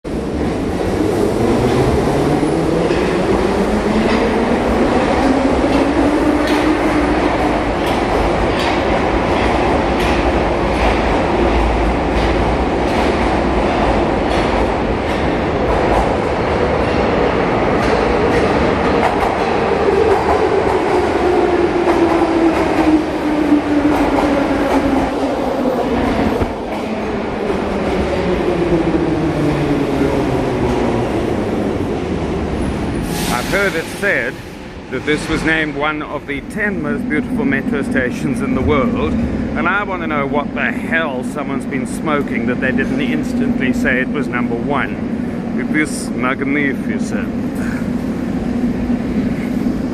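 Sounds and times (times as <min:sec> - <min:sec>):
train wheels clicking over rail joints: 0:03.9 - 0:21.0.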